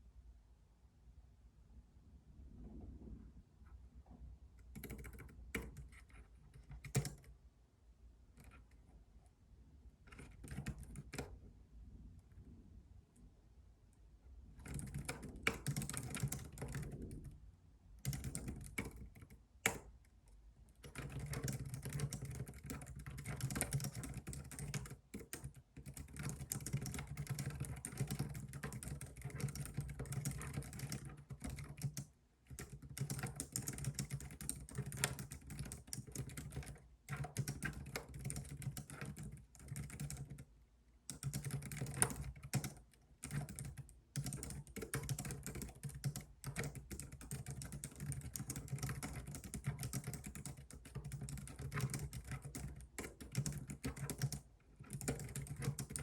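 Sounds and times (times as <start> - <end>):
typing on computer keyboard: 4.6 - 7.3, 8.4 - 8.7, 10.1 - 11.4, 14.6 - 17.4, 18.0 - 20.1, 20.7 - 40.5, 41.1 - 56.0.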